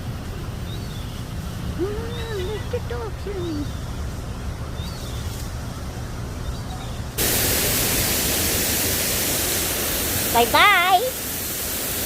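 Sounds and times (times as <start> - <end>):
waterfall rushing: 7.2 - 12.0.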